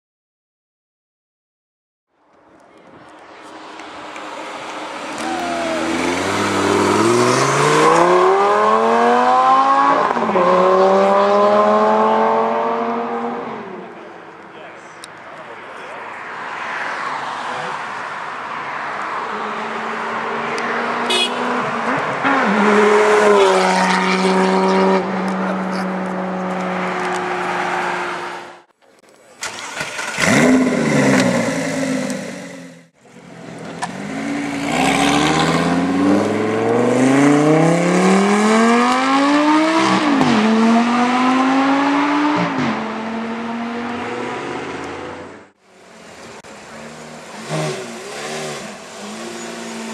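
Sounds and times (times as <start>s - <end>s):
sports car engine accelerating: 4.2s - 13.8s, 30.0s - 45.6s.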